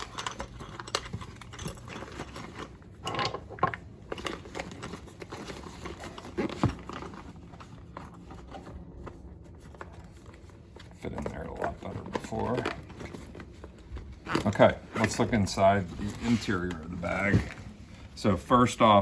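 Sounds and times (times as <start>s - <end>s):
fabric rustling: 4.8s - 18.4s.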